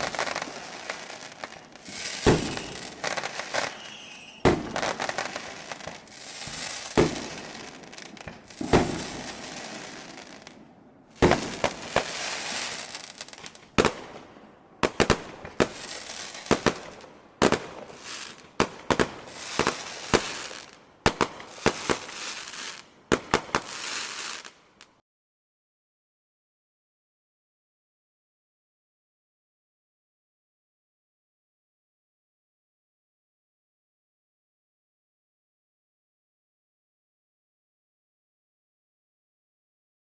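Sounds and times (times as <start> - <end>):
fireworks bangs: 0.0 - 24.6
fireworks hissing and crackling: 0.0 - 24.9.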